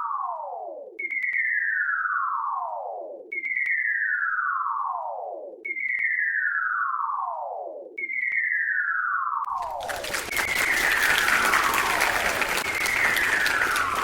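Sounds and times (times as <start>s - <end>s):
firework whistle sliding down: 9.7s - 14.0s.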